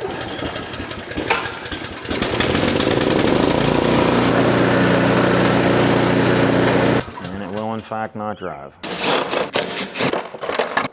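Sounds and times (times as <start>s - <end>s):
snowblower engine running: 0.0s - 8.1s.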